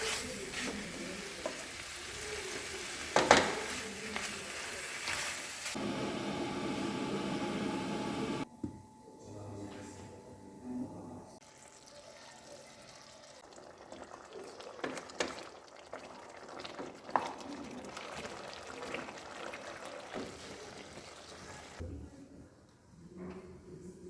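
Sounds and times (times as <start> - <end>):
curry bubbling in a pot: 11.5 - 21.8.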